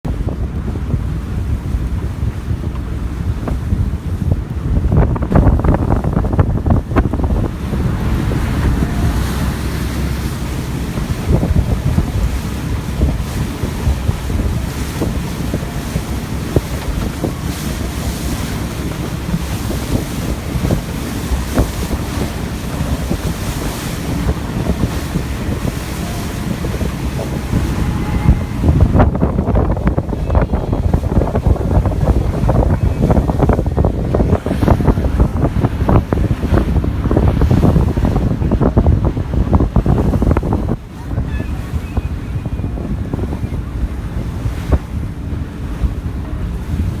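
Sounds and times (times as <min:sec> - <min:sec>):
boat engine rumble: 0:00.0 - 0:47.0
rushing water: 0:00.0 - 0:47.0
wind buffeting microphone: 0:00.0 - 0:47.0.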